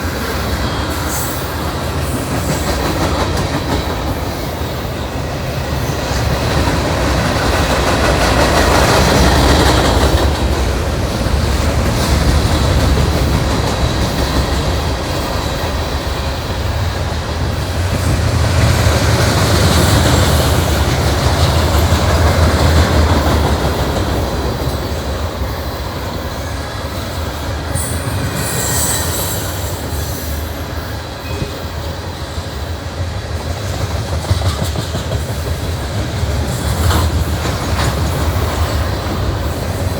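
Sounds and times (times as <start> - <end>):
train wheels clacking over rail: 0.0 - 39.9
high wheel squeal: 26.4 - 32.1.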